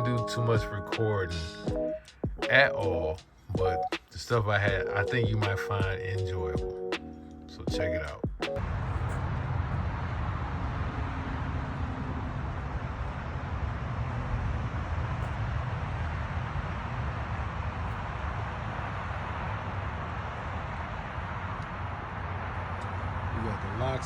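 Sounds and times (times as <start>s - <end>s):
vehicle road noise rumble: 7.9s - 24.0s.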